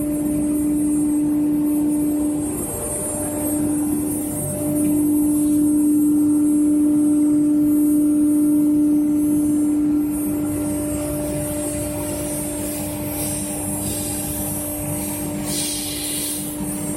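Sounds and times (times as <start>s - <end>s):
router spindle high whine: 0.0s - 16.9s
hiss of foam cutting: 15.4s - 16.7s.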